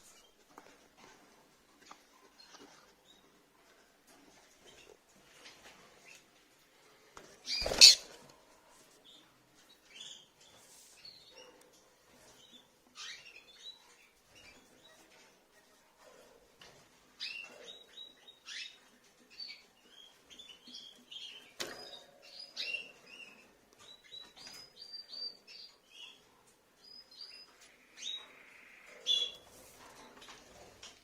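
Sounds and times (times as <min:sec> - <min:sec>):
lovebirds chirping: 0:07.5 - 0:08.2.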